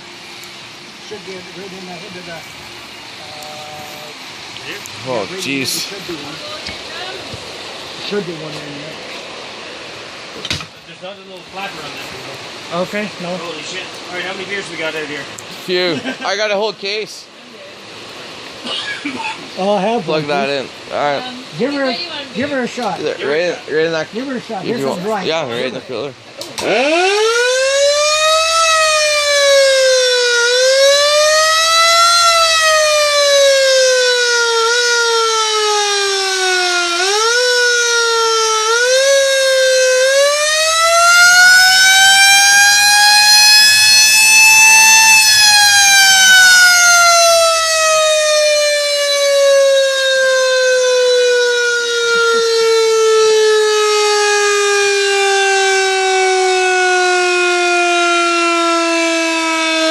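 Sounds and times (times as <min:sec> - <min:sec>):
ship's siren wailing: 0:00.0 - 0:07.3, 0:26.6 - 0:59.9.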